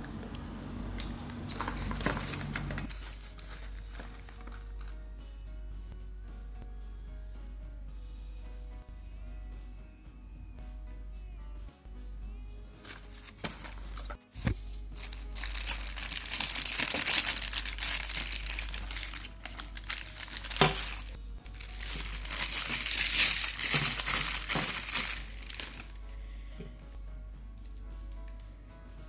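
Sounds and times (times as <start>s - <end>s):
background music: 0.6s - 29.0s
crinkly packaging crumpled: 1.3s - 5.0s, 12.8s - 14.2s, 14.9s - 26.2s
packaging snap: 15.1s - 21.1s.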